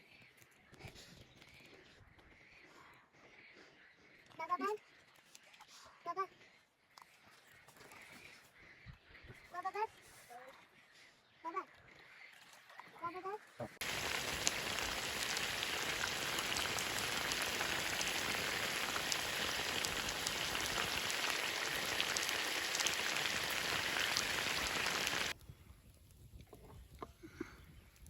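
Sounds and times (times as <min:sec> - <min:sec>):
steady hiss with fine ticks: 0:13.8 - 0:25.3.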